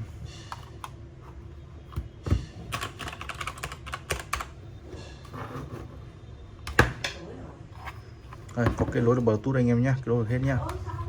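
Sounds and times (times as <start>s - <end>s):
mechanical keyboard clacking: 2.7s - 4.5s.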